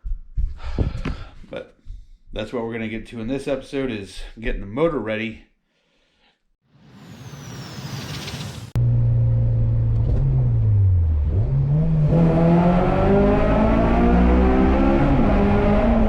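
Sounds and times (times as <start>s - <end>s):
rising whoosh: 6.7s - 8.8s
car engine revving: 7.0s - 16.0s.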